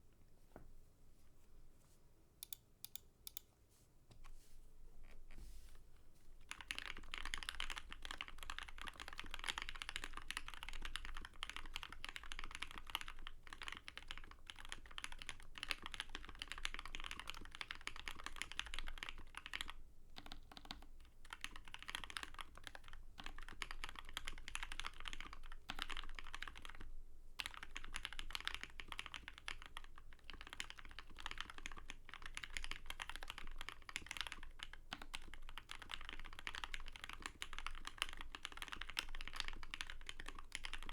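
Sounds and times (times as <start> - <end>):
mechanical keyboard typing: 6.4 - 40.9.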